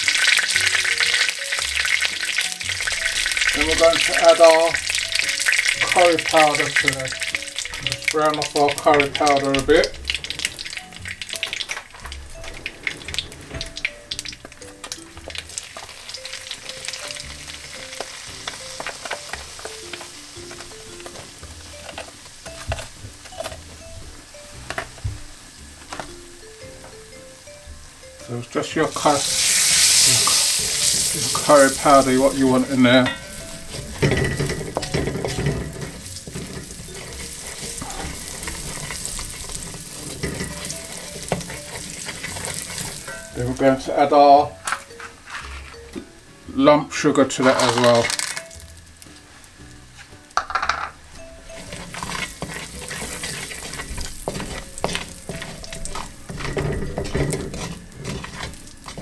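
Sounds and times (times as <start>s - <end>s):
utensil scraping a pan: 0.0s - 14.7s, 28.3s - 45.8s, 51.4s - 59.0s
spices sizzling in hot fat: 0.0s - 59.0s.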